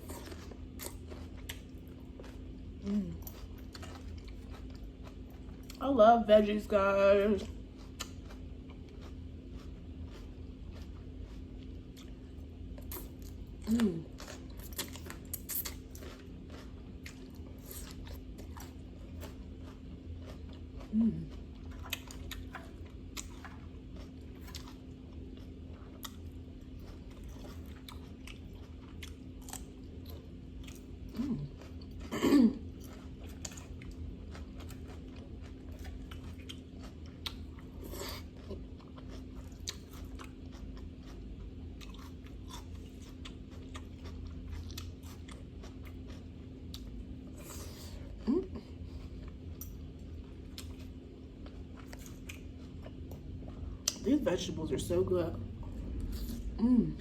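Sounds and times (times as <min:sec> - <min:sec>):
chewing crunches: 0:00.0 - 0:05.8, 0:07.4 - 0:55.0
person humming: 0:02.8 - 0:03.2, 0:56.6 - 0:57.0.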